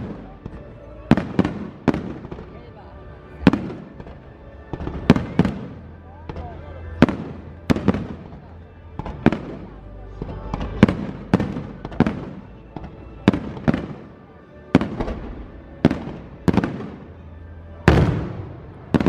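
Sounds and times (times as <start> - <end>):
fireworks bangs with rolling echo: 0.0 - 19.0.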